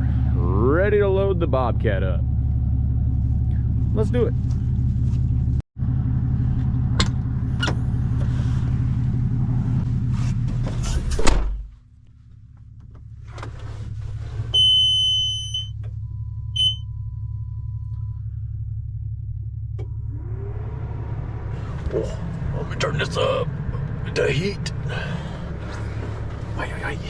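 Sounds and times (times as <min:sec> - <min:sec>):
truck engine idling: 0:00.0 - 0:10.6, 0:14.0 - 0:27.0
door shutting: 0:10.6 - 0:11.7
electronic warning beep: 0:14.6 - 0:18.0.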